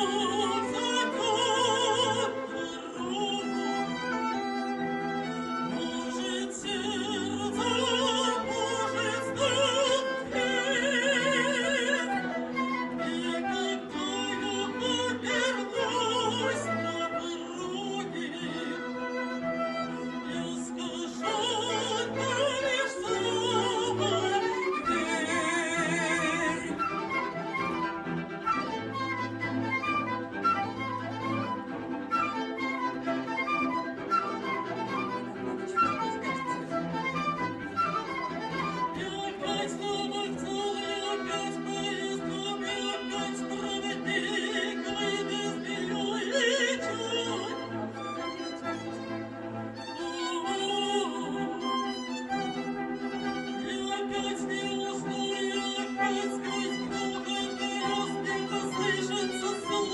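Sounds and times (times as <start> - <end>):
operatic female voice singing: 0.0 - 27.4, 38.5 - 47.9, 49.9 - 52.1, 53.2 - 59.9
flute: 0.0 - 59.9
sustained string notes: 0.0 - 59.9.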